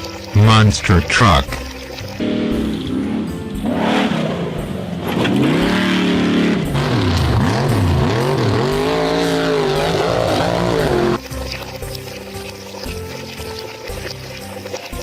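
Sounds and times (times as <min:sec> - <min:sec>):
monster truck engine revving: 0:02.2 - 0:11.2.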